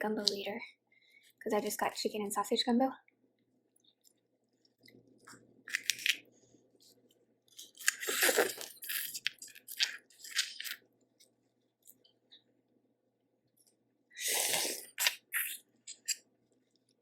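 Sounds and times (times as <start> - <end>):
wet crackly chewing: 6.9 - 12.1.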